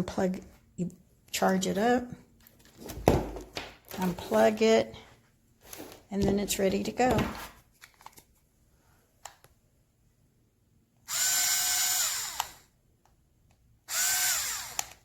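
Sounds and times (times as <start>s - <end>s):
cordless screwdriver motor whine: 11.1s - 12.7s, 13.9s - 15.0s.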